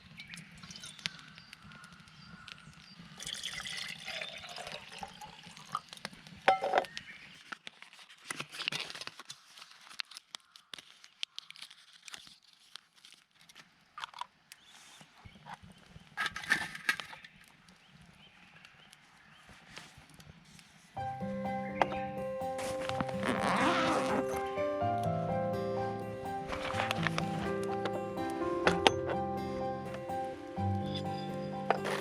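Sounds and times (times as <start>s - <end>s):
liquid pouring and splashing: 3.2s - 5.9s.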